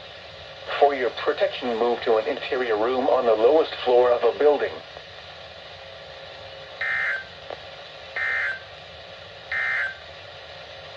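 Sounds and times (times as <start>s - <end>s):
buzzy digital data chirps: 6.8s - 7.3s, 8.2s - 8.6s, 9.5s - 10.0s.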